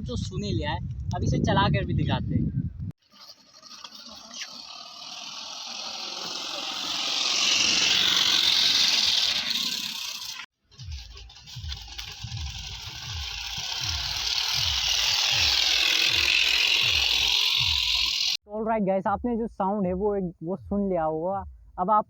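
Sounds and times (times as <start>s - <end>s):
bottle noisemaker rattling on bicycle: 3.0s - 18.4s.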